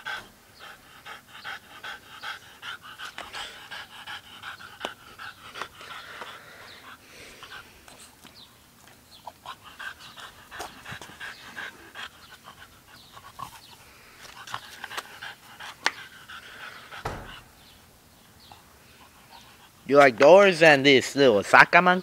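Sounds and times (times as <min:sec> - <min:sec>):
large dog panting: 0:00.0 - 0:17.8, 0:18.4 - 0:20.0
dull bump: 0:17.0 - 0:17.6.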